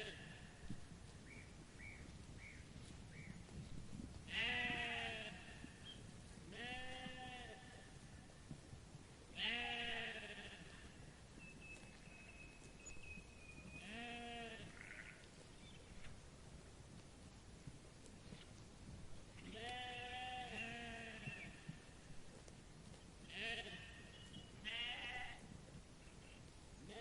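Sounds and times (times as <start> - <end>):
sheep bleating: 4.3 - 5.7, 6.5 - 7.9, 9.4 - 11.0, 13.8 - 15.3, 19.4 - 21.5, 23.3 - 25.4.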